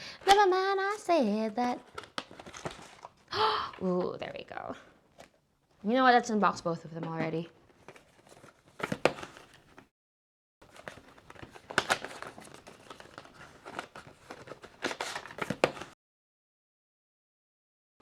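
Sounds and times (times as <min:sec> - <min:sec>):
packaging crinkling and tearing: 0:01.6 - 0:04.0, 0:07.6 - 0:09.8, 0:10.6 - 0:16.0.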